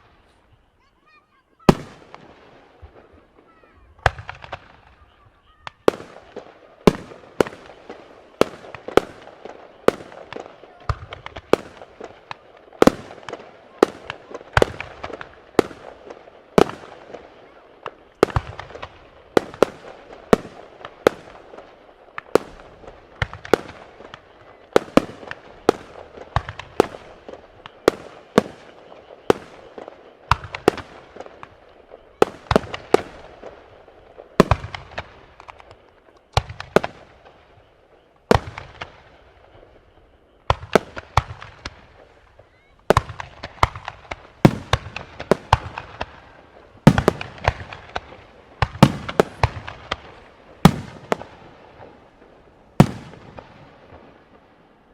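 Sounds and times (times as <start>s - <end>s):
fireworks bursting with bangs: 0.0s - 54.9s.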